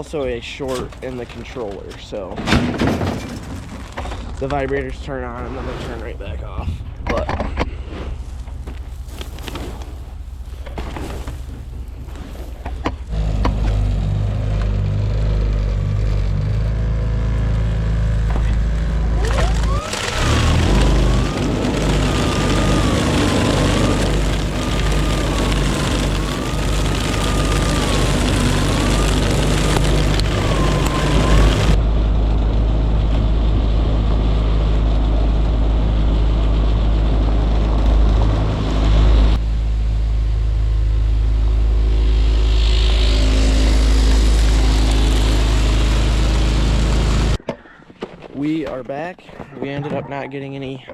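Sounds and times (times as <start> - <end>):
truck engine running: 7.8 - 47.4
loud rushing with whistling tone: 19.3 - 32.0.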